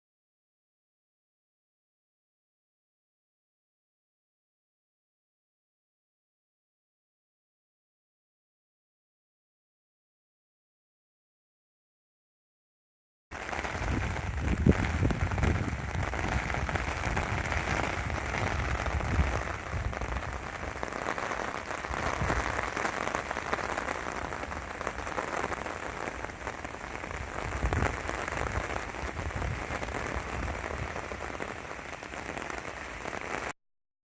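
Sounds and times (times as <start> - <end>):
heavy rain falling: 13.4 - 33.6.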